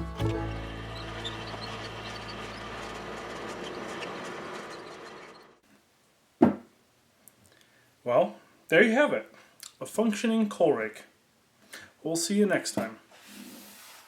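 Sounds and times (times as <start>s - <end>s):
bluegrass chord ringing out: 0.0s - 2.4s.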